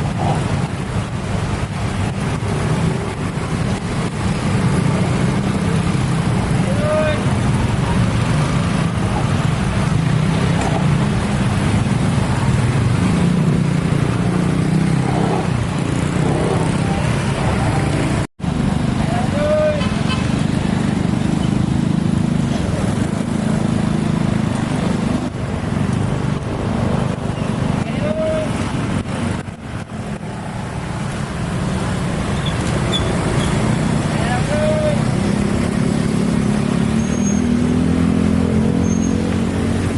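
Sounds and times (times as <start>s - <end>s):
vehicles rumbling: 0.0s - 39.9s.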